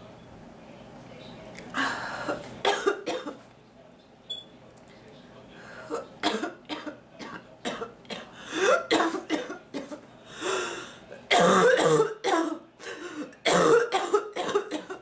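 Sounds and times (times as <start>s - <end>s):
woman coughing: 1.8s - 3.4s, 6.2s - 10.0s, 11.3s - 12.6s, 13.4s - 15.0s.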